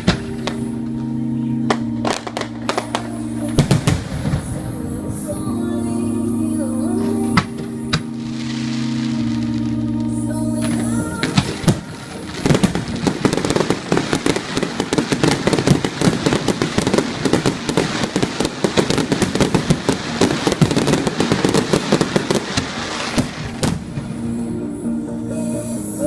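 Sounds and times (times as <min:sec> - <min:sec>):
loud fireworks bangs: 0:00.0 - 0:05.3, 0:07.4 - 0:24.5
fireworks bursts and crackling: 0:00.0 - 0:05.6, 0:06.3 - 0:26.0.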